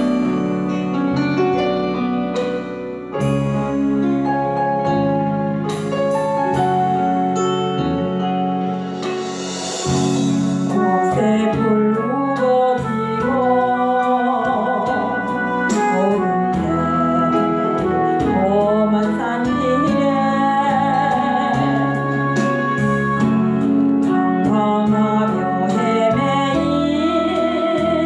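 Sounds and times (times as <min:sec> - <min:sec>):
cymbal wash: 0:00.0 - 0:11.6
light steady beat: 0:00.0 - 0:12.1
keyboard or organ chords: 0:00.0 - 0:28.0
wavering melodic lead: 0:00.0 - 0:28.0.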